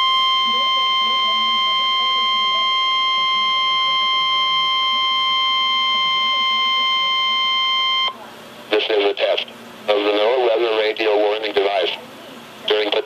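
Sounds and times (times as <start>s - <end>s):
steady high alarm tone: 0.0s - 8.2s.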